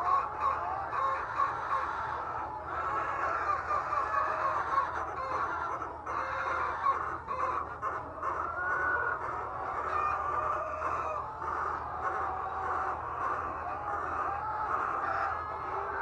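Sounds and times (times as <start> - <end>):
hens clucking: 0.0 - 16.0.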